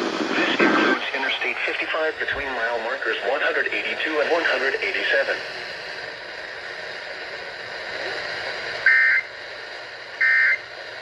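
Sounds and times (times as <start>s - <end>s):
radio hiss: 0.0s - 11.0s.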